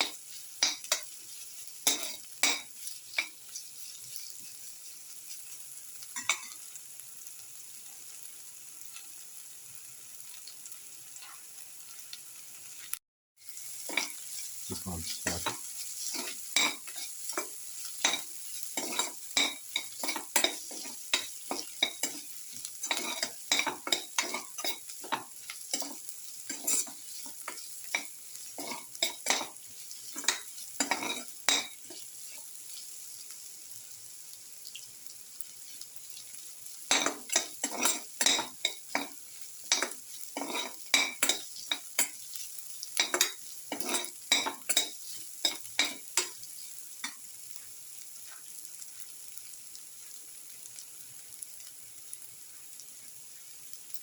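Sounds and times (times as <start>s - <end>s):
spoon scraping a pan: 0.0s - 6.8s, 13.5s - 33.4s, 35.4s - 48.6s
food sizzling in hot oil: 0.0s - 54.0s.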